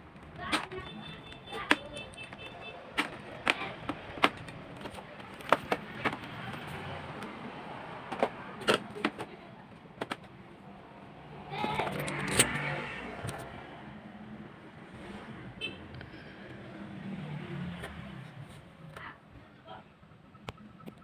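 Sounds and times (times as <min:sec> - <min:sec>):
sharp clicks and knocks: 0:00.1 - 0:07.3, 0:11.7 - 0:13.4.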